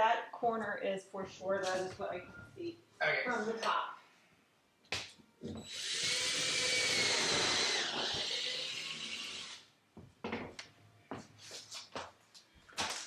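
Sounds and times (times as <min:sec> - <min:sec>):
power drill running: 0:05.6 - 0:09.6.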